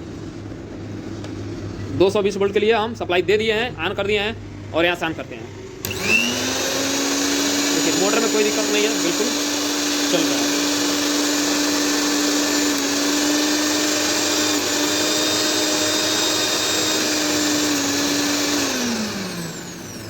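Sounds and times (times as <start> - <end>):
mixer grinder motor whining: 5.7 - 20.0.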